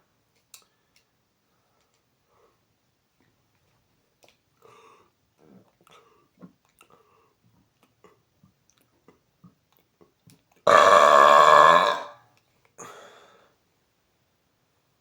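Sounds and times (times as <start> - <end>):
faint clicks and gulps: 5.3 - 10.6
man burping loudly: 10.7 - 12.2.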